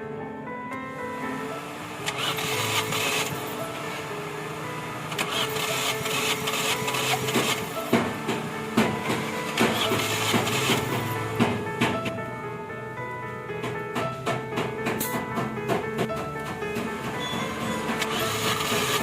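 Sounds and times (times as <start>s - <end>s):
background music: 0.0s - 19.0s
mechanical whirring: 1.7s - 4.1s, 4.8s - 8.2s, 17.3s - 19.0s
sharp clicks and knocks: 5.1s - 12.1s, 13.6s - 19.0s.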